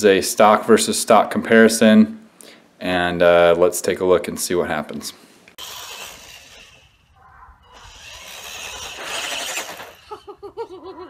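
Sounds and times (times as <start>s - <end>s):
toy car motor whirring: 5.5s - 10.3s.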